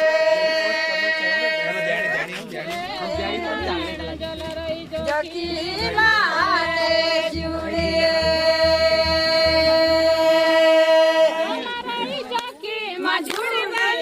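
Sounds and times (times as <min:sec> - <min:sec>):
person singing folk song: 0:00.0 - 0:14.0
low regular pulsing: 0:02.6 - 0:11.9.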